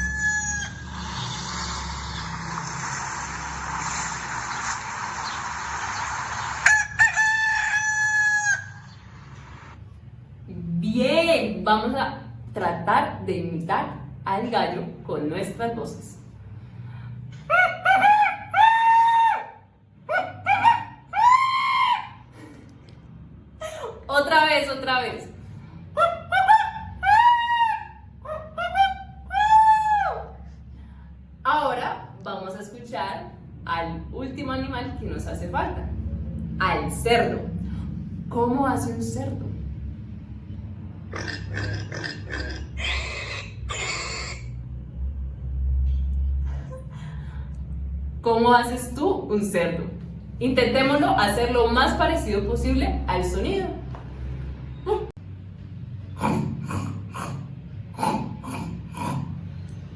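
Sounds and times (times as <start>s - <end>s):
woman imitating rooster crow: 0.0s - 1.0s, 6.6s - 8.8s
pig grunting and squealing: 41.0s - 44.6s, 56.1s - 59.8s.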